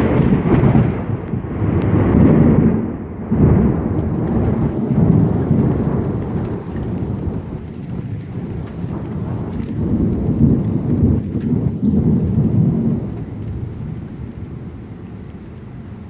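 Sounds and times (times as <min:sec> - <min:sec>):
steady rain: 0:00.0 - 0:16.0
thunder rumbling: 0:00.0 - 0:16.0
water dripping: 0:03.4 - 0:16.0.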